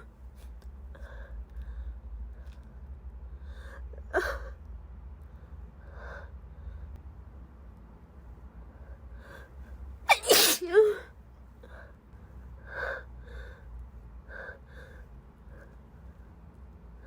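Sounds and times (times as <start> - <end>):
woman sneezing: 10.1 - 11.0.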